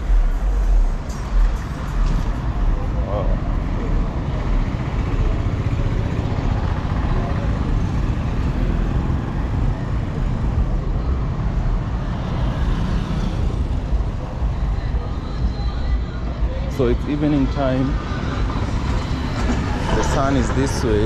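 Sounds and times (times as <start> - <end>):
passing vehicles rumbling: 0.0 - 21.0.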